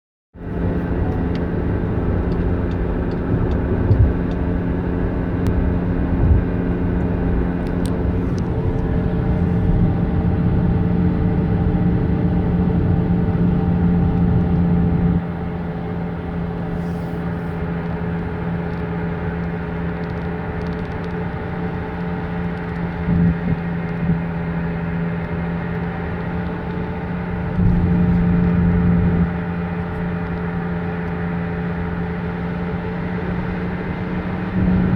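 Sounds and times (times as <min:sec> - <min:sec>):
car droning hum: 0:00.4 - 0:34.9
road rumble: 0:00.4 - 0:34.9.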